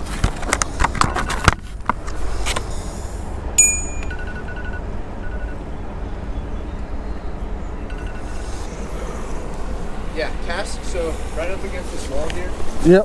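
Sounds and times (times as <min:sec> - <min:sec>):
steady low rumble: 0:00.0 - 0:12.8
bright metallic ping: 0:03.6 - 0:04.4.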